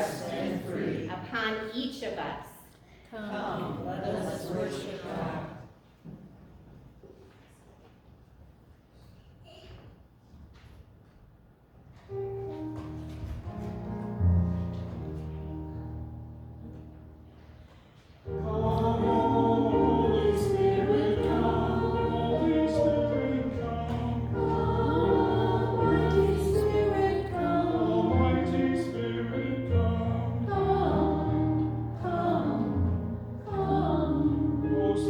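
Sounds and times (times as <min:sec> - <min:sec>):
group singing a hymn: 0:00.0 - 0:01.2, 0:03.2 - 0:05.8, 0:18.2 - 0:35.0.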